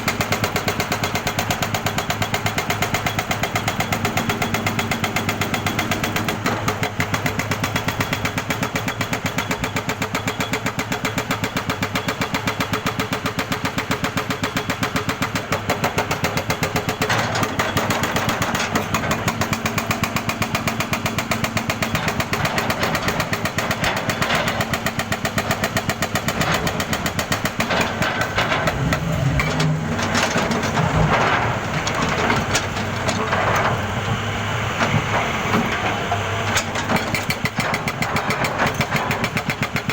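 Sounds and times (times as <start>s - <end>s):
engine drone: 26.4s - 37.2s.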